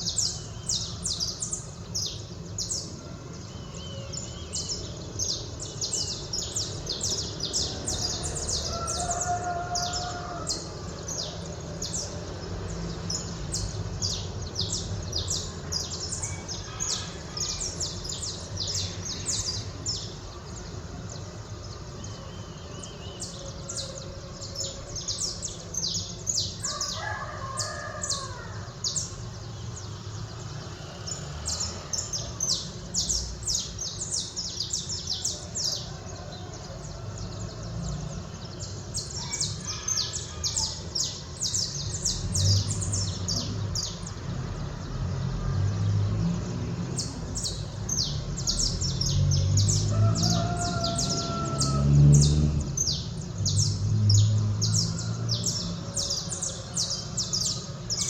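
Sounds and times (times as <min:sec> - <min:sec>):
small birds chirping: 0:00.0 - 0:58.0
rooster crowing: 0:07.5 - 0:11.3, 0:16.3 - 0:18.2, 0:26.6 - 0:29.0, 0:35.2 - 0:43.0, 0:48.0 - 0:52.9, 0:54.3 - 0:58.0.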